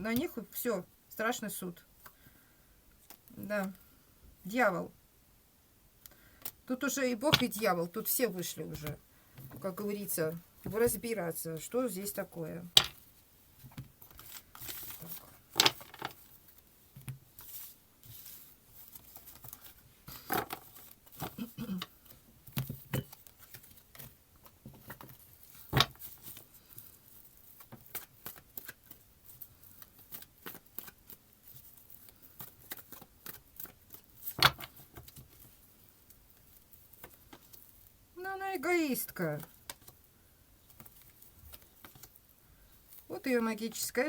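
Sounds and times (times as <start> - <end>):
cards rustling and tapping: 12.8 - 37.8, 39.4 - 40.0, 40.7 - 42.2.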